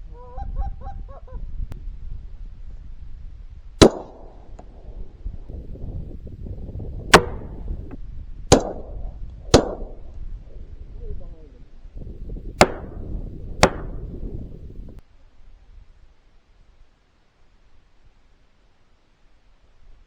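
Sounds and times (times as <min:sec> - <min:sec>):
wind noise: 0:00.0 - 0:16.8
shotgun shots echoing: 0:03.8 - 0:04.9, 0:07.1 - 0:07.9, 0:08.5 - 0:10.1, 0:12.6 - 0:14.2.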